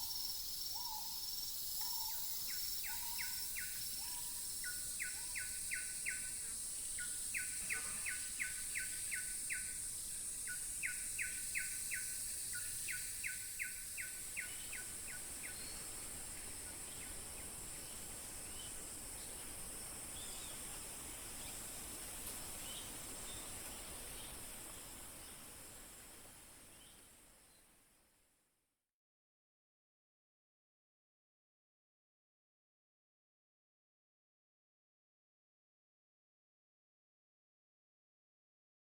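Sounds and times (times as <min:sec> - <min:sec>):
high-pitched insect drone: 0:00.0 - 0:19.2
rapid insect chirps: 0:00.0 - 0:27.7.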